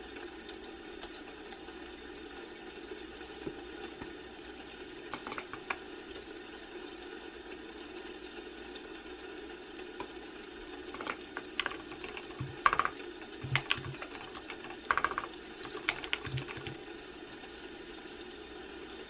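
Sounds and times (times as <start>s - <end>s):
keyboard typing clicks: 3.2s - 5.8s, 11.0s - 16.8s.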